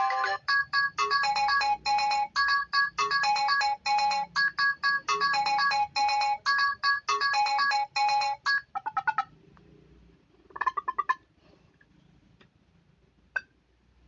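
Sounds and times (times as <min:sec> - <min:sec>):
electronic phone ringtone: 0:00.0 - 0:08.8.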